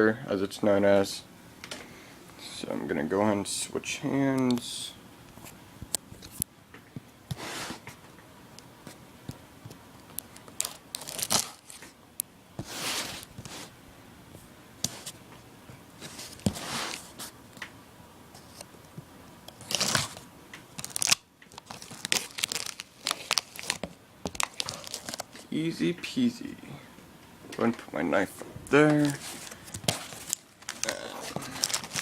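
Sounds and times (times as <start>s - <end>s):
cardboard and tape tearing: 10.6s - 11.8s, 19.6s - 20.2s, 20.8s - 25.3s, 29.0s - 32.0s.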